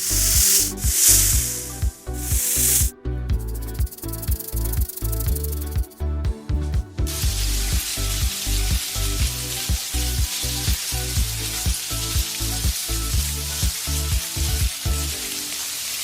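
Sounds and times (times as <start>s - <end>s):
crackling hiss: 0.0s - 2.9s, 3.5s - 5.8s
low steady tones: 0.0s - 15.3s.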